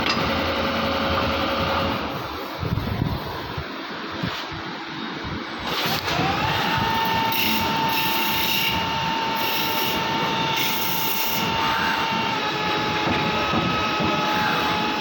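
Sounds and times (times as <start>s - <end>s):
cnc spindle whine: 4.8s - 15.0s.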